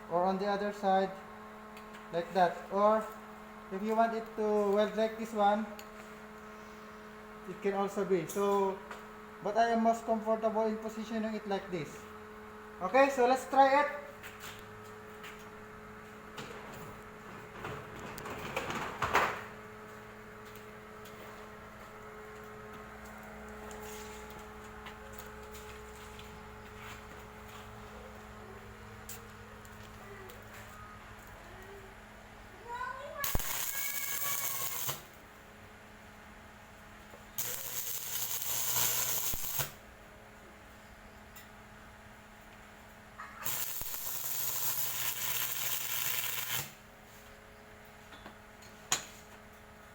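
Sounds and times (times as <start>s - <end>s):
welding machine humming: 33.2s - 35.4s, 36.6s - 40.0s, 42.6s - 47.2s.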